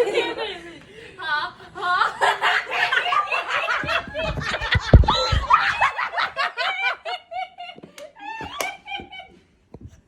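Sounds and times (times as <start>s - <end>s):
young women laughing: 0.0s - 9.4s
heavy low thumps: 4.1s - 5.8s.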